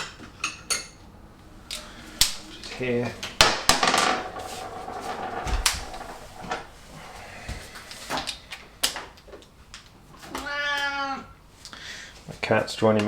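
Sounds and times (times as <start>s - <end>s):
cat meowing: 10.2s - 11.4s.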